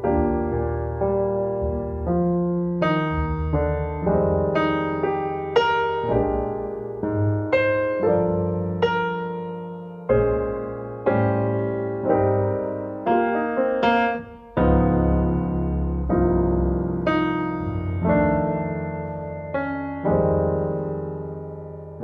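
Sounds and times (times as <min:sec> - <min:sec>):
gentle piano piece: 0:00.0 - 0:22.0.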